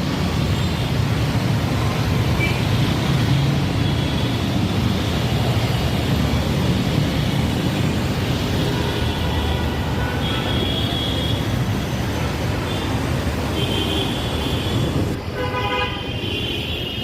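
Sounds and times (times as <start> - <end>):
traffic rumble: 0.0 - 17.0
vehicle horns: 8.7 - 11.5, 12.7 - 17.0.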